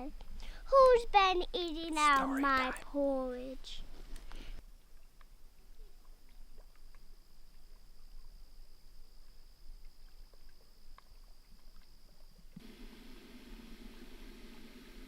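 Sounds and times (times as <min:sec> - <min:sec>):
thin high-pitched whine: 0:01.7 - 0:03.0.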